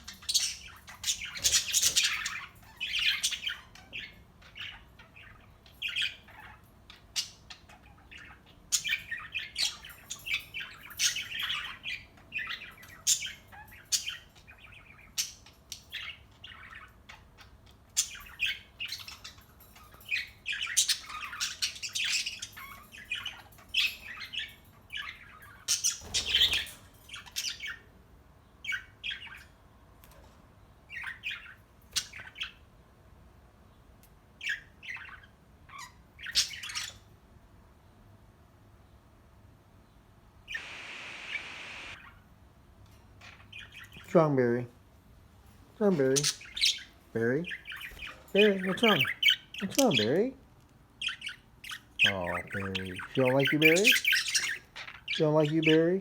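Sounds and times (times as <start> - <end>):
budgerigar chirping and squawking: 0.0 - 27.9, 34.4 - 37.1, 40.5 - 42.3, 46.0 - 50.4, 51.0 - 56.0.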